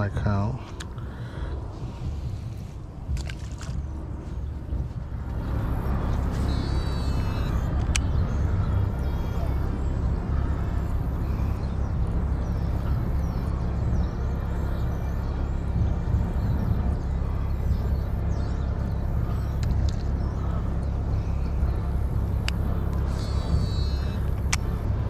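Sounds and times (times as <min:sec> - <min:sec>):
low outdoor rumble: 0:00.0 - 0:25.0
faint sharp clicks: 0:19.6 - 0:20.2.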